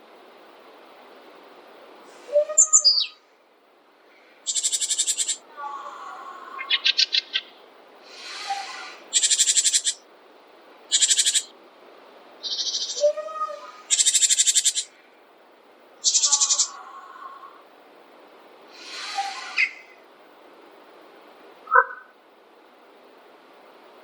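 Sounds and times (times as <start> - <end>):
faint lower bird calls: 2.1 - 3.4, 4.0 - 10.1, 10.9 - 11.6, 12.4 - 15.2, 16.0 - 17.7, 18.7 - 20.0, 21.7 - 22.2
songbirds trilling: 2.1 - 3.4, 4.0 - 10.1, 10.8 - 11.6, 12.4 - 15.2, 16.0 - 17.6, 18.7 - 20.0.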